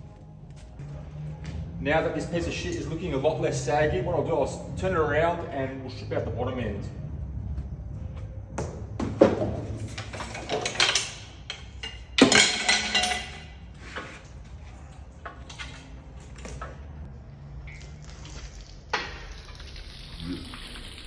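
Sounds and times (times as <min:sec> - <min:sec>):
metal tools clanking: 0:09.7 - 0:16.3.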